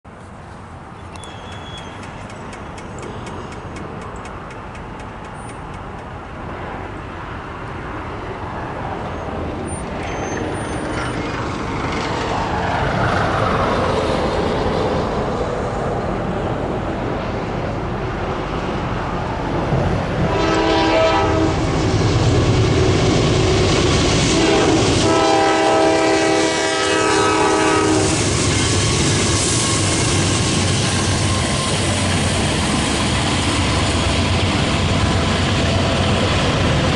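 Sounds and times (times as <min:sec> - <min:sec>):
freight train rumbling: 0:00.1 - 0:36.9
train air horn blasts: 0:20.2 - 0:21.8, 0:24.3 - 0:28.3.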